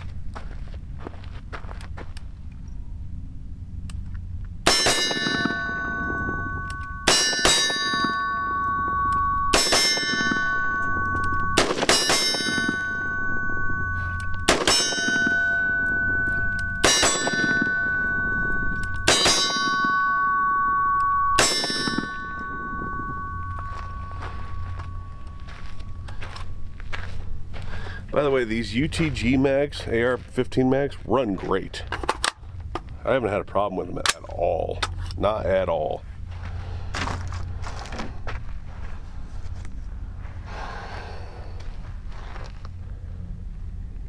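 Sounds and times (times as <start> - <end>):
steel target ringing: 4.6 - 29.3
rifle shots: 11.6 - 12.8, 14.5 - 15.3.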